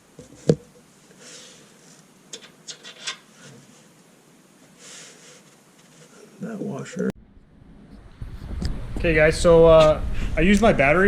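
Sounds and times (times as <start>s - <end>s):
faint rubbing: 0.2s - 4.1s, 4.7s - 7.1s.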